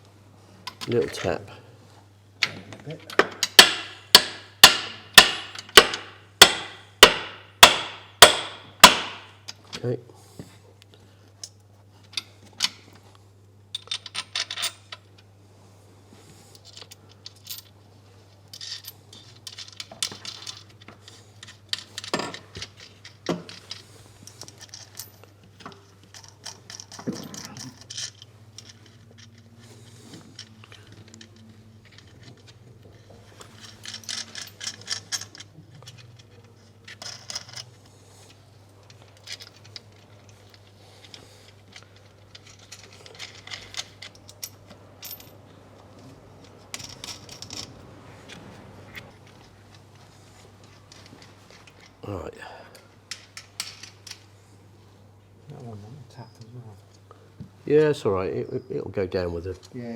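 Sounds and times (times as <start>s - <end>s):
metal tools clinking and rattling: 13.8s - 15.0s, 18.5s - 37.8s, 38.8s - 47.8s.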